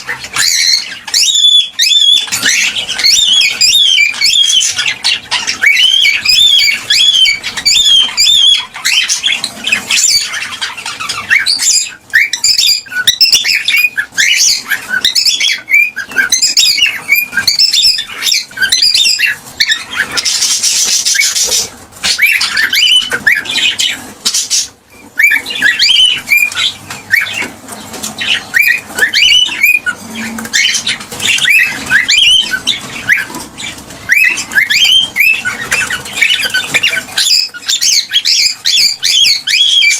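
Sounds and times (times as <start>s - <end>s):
cockatiel chirping: 0.0s - 39.9s.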